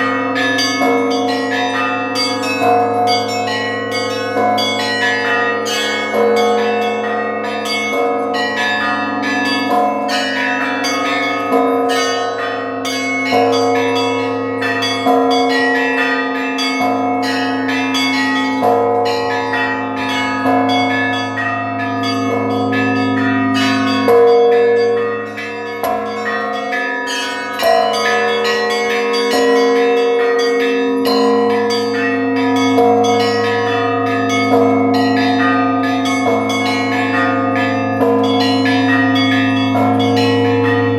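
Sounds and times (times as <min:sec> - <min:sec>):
small bells chiming rapidly: 0:00.0 - 0:40.9
heavy bell strokes: 0:30.4 - 0:40.9.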